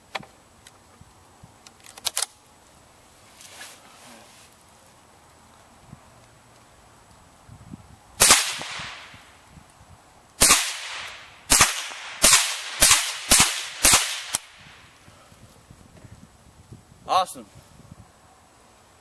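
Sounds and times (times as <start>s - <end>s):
rifle shots: 8.2s - 9.1s, 10.4s - 14.6s.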